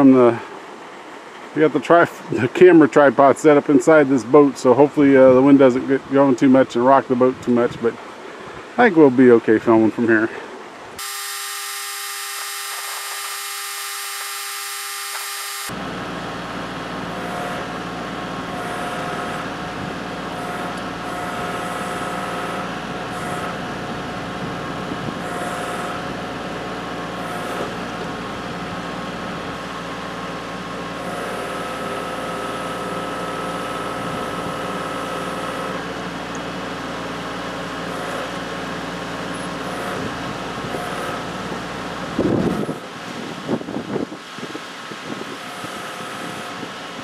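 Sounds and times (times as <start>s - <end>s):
hydraulic whine: 10.6s - 47.0s
tractor diesel engine running: 15.7s - 47.0s.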